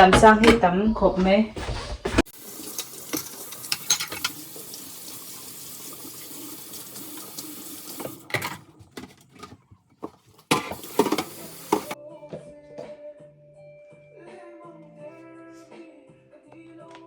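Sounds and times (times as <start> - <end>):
tap running into a sink: 2.4 - 8.6, 10.5 - 12.0.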